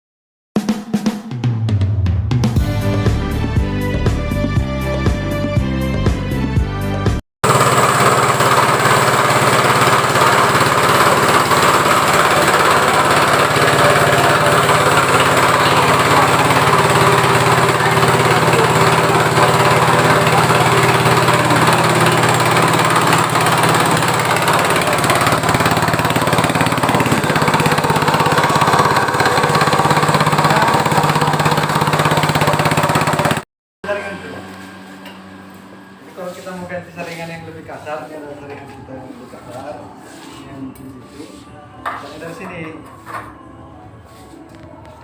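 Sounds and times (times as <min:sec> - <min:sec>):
coffee grinder grinding: 0:07.4 - 0:33.4
low motor hum: 0:07.5 - 0:37.8.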